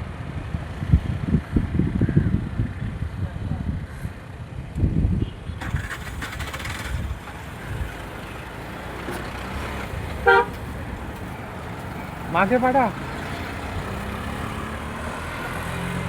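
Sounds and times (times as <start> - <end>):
road traffic rumble: 0.0 - 16.0
short vehicle horn toot: 10.2 - 10.6.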